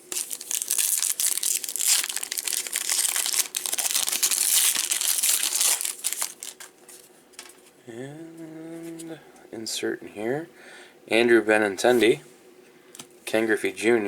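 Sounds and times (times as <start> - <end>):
foil wrapper crinkling: 0.0 - 7.6.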